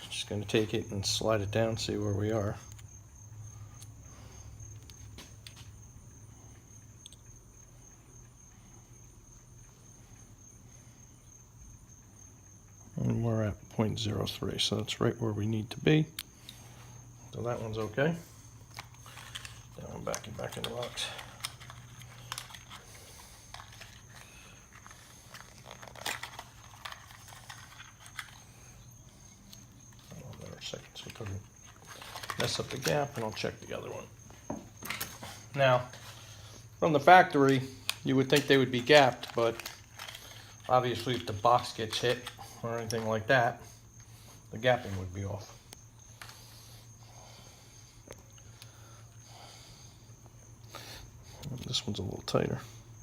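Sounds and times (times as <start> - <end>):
steady low hum: 0.0 - 53.0
small parts clicking and tapping: 18.6 - 33.7, 37.2 - 43.3.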